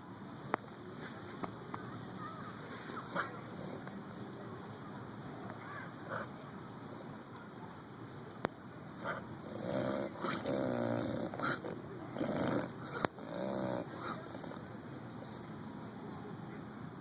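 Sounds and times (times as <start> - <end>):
dog sneezing and snorting: 11.2 - 13.2, 13.8 - 14.5.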